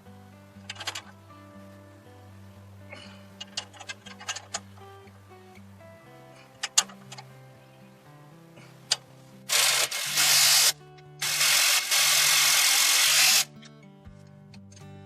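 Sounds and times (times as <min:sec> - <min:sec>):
acoustic guitar music: 0:00.0 - 0:15.0
handheld power tool running: 0:09.5 - 0:13.5.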